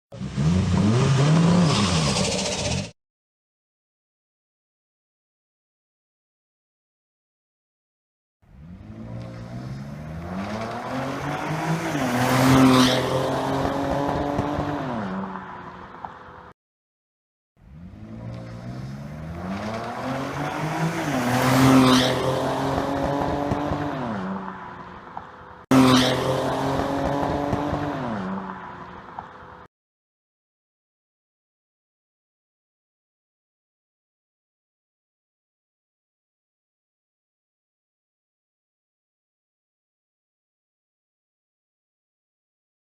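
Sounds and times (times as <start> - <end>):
car engine accelerating hard: 0.2 - 2.9, 17.6 - 24.6, 25.7 - 28.6.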